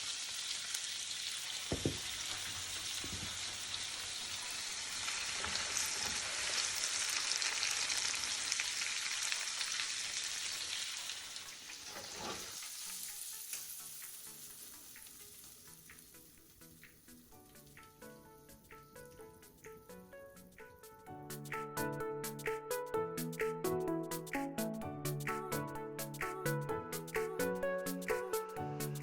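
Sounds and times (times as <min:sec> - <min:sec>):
food sizzling in a hot pan: 0:00.0 - 0:20.5
background music: 0:12.5 - 0:29.0.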